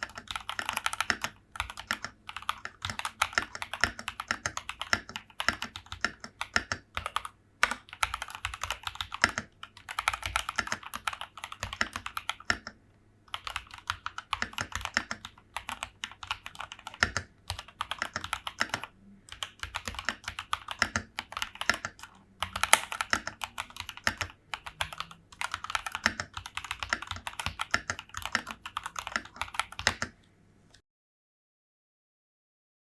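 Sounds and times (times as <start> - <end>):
mechanical keyboard typing: 0.0 - 30.2.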